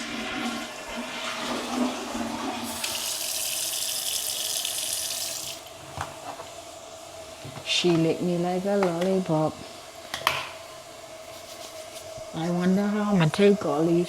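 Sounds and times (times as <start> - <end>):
faucet running into sink: 0.0 - 5.7
toilet flushing: 0.0 - 5.7.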